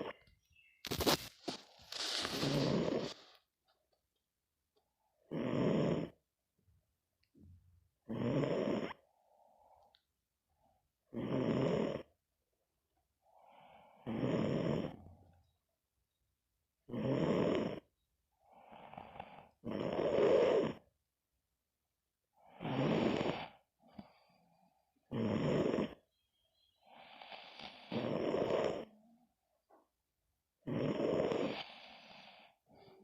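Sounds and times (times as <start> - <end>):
soft breaths: 0.9 - 3.6, 22.4 - 25.0, 26.2 - 29.8, 30.9 - 33.0
person snoring: 1.9 - 3.4, 5.3 - 6.2, 8.0 - 9.0, 11.1 - 12.1, 13.4 - 15.1, 16.9 - 17.9, 18.5 - 20.9, 22.4 - 24.3, 25.1 - 26.0, 26.8 - 29.1, 30.6 - 33.0.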